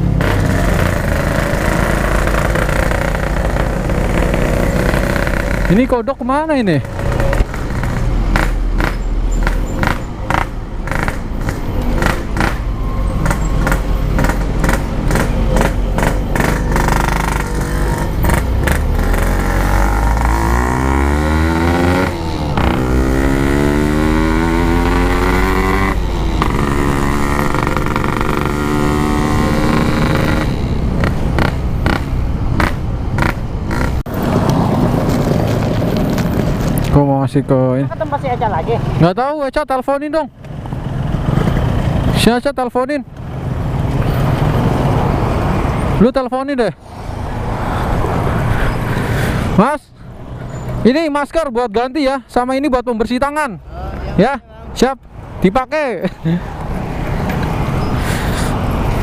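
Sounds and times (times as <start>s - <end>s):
two-stroke motorcycle revving: 0.0s - 36.8s.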